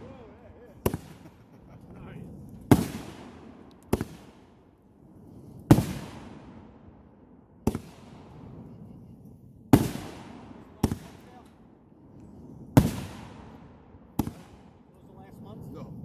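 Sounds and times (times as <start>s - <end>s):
fireworks bangs with echo: 0.0s - 4.8s, 5.6s - 11.8s, 12.6s - 16.0s.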